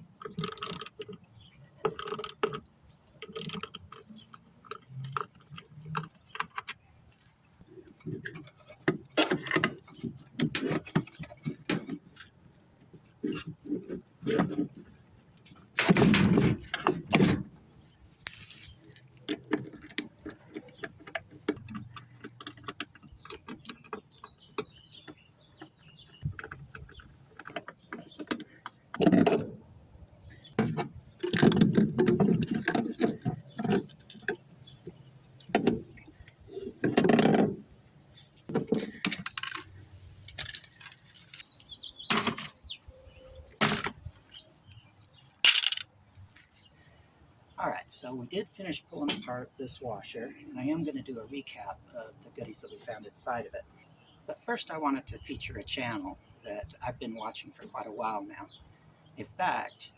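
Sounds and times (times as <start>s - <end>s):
metal parts and tools clinking: 0.2s - 1.2s, 1.8s - 2.6s, 3.2s - 6.8s, 38.4s - 41.4s, 45.0s - 45.9s.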